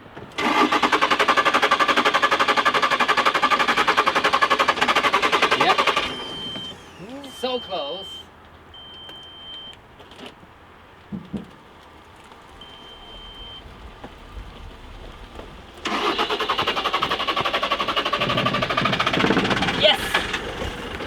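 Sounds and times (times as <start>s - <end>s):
engine running: 0.0s - 9.3s, 9.9s - 21.0s
soft knocks: 11.0s - 11.7s.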